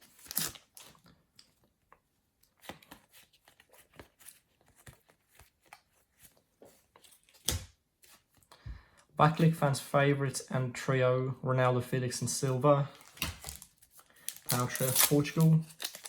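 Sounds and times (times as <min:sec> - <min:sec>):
foil packet crinkling: 0:00.0 - 0:01.1, 0:12.9 - 0:16.0.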